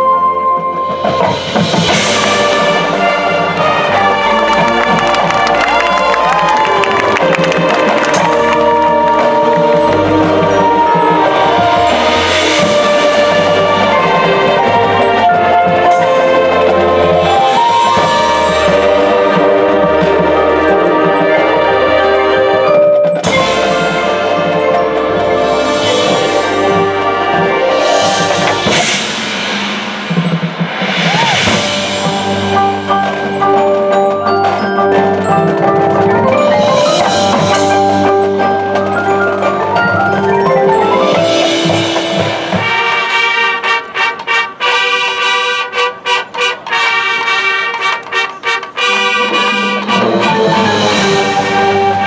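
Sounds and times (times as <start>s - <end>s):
marching band music: 0.8s - 22.7s, 35.7s - 52.0s
mallet percussion: 31.6s - 43.0s.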